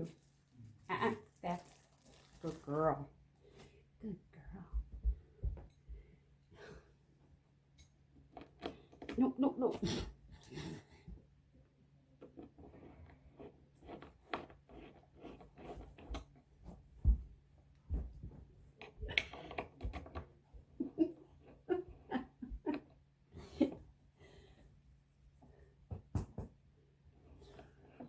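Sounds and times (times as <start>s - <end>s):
knocks and clicks of furniture parts: 25.9s - 26.6s.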